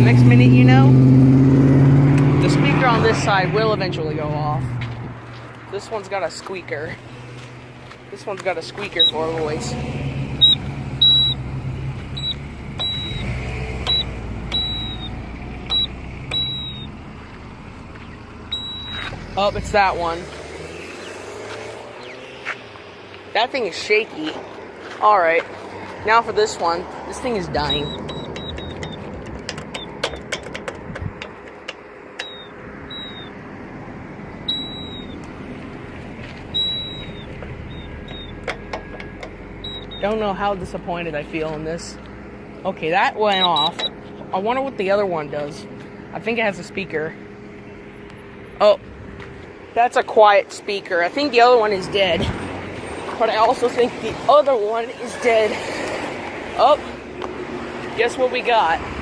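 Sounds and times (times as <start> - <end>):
low traffic rumble: 0.0 - 59.0
crosswalk button chirps: 8.2 - 22.8, 26.1 - 31.1, 31.7 - 33.4, 34.3 - 45.6
high beep: 10.4 - 11.4, 12.2 - 16.9, 18.5 - 19.1, 27.6 - 29.0, 32.2 - 33.3, 34.5 - 35.2, 36.5 - 40.2, 43.3 - 44.0
sharp clicks: 27.7 - 33.3.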